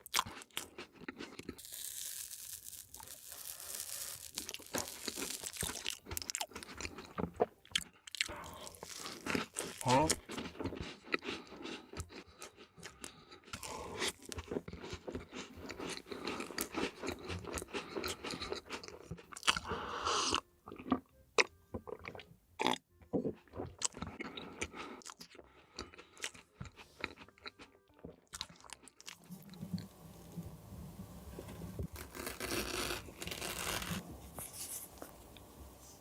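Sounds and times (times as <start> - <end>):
chewing: 0.0 - 1.6, 4.4 - 29.9
crunching crisp food: 0.0 - 29.9, 31.8 - 35.2.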